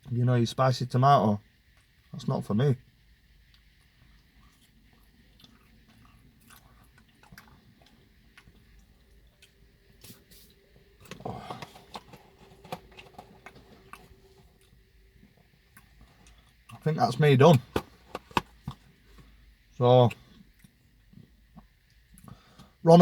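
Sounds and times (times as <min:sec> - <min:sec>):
man chewing quietly: 0:03.3 - 0:16.9, 0:20.1 - 0:22.8.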